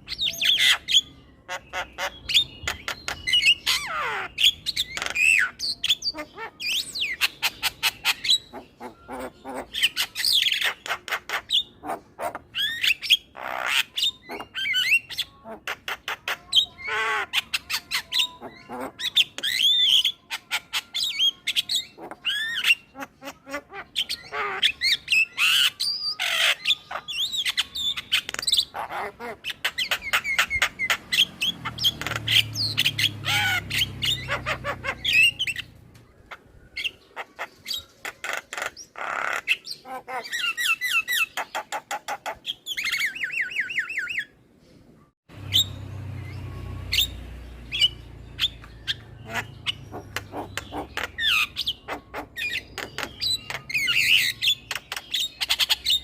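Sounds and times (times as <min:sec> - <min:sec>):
myna singing chatter: 0:14.2 - 0:25.3.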